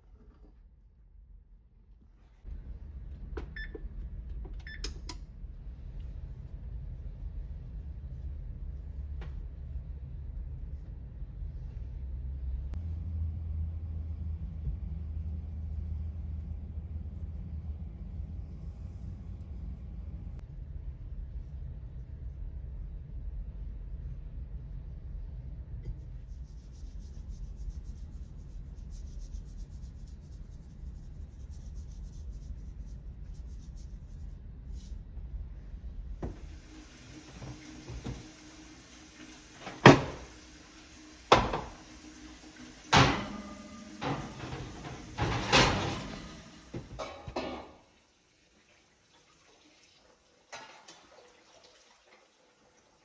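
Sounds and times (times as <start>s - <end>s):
low steady rumble: 0.0s - 47.8s
kitchen knocks and clunks: 36.2s - 36.5s, 37.3s - 38.3s, 39.6s - 40.3s, 41.3s - 41.9s, 42.8s - 47.9s.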